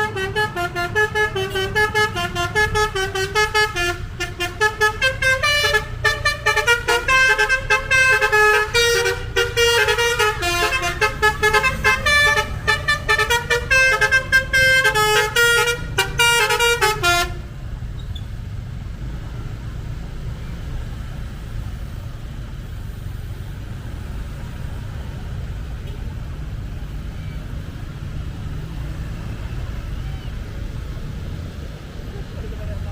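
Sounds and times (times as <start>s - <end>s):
bus horn playing a tune: 0.0s - 17.7s
bus engine rumble: 0.0s - 32.9s.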